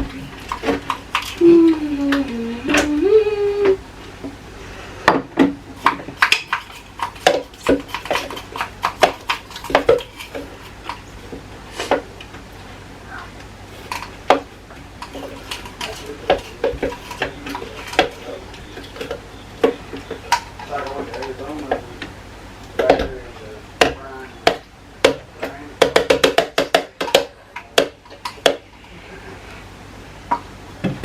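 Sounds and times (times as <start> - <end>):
dishes and utensils clinking: 5.1 - 11.1, 13.7 - 22.0.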